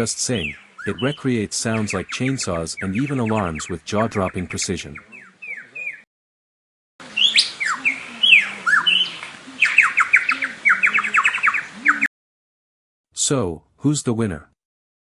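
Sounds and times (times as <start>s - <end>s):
lyrebird singing: 0.0s - 6.1s, 7.0s - 12.1s.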